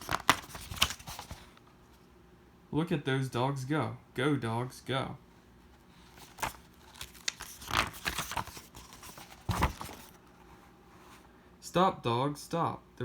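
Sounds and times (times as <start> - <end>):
book pages turning: 0.0 - 1.6, 5.9 - 11.2.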